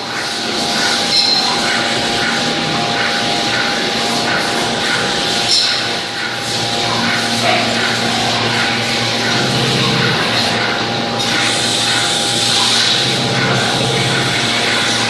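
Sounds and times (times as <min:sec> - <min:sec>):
machine whining: 0:00.0 - 0:15.0.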